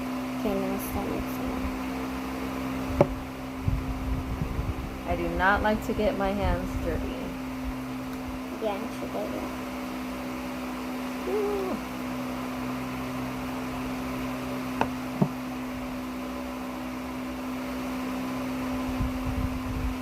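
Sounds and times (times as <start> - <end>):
low electrical hum: 0.0 - 20.0
low rumbling: 2.9 - 8.6.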